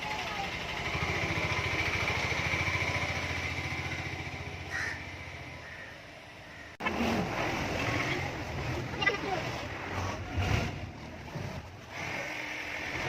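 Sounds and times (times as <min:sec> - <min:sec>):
engine running with even pulse: 0:00.0 - 0:13.0
crow cawing: 0:04.6 - 0:06.8.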